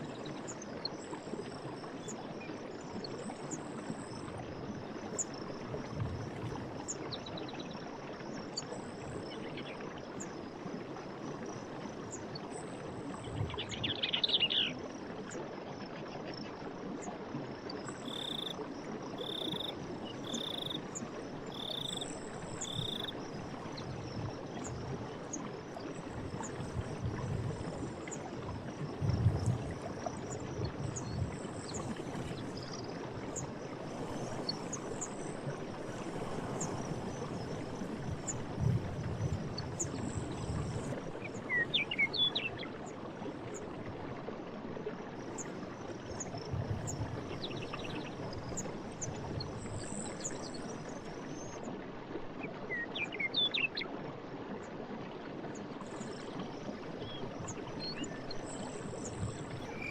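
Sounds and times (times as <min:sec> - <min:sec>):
insects chirping: 0:17.7 - 0:42.7, 0:57.4 - 0:59.9.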